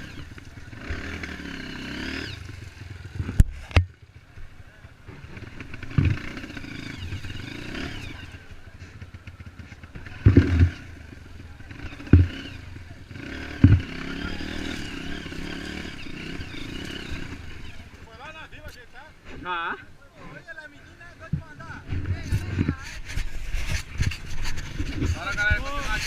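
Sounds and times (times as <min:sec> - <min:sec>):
dirt bike engine running: 0:00.0 - 0:26.0
heavy dull thumps: 0:12.0 - 0:12.4, 0:13.5 - 0:13.9.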